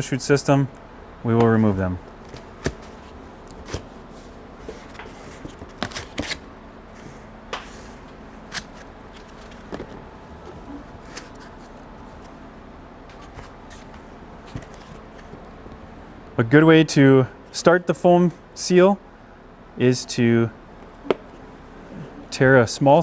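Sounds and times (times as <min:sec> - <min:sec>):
faint steady hum: 0:00.0 - 0:23.0.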